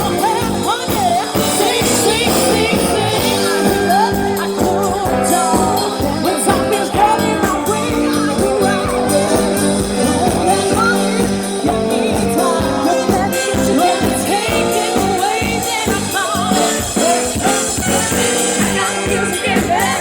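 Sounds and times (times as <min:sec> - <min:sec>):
lead singer singing: 0:00.0 - 0:20.0
live band playing pop-rock: 0:00.0 - 0:20.0.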